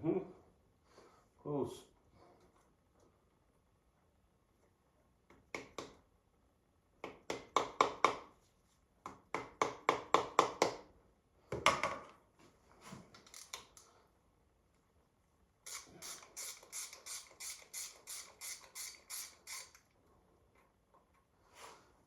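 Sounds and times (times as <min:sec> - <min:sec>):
hand tools clicking on metal: 0:15.7 - 0:19.8.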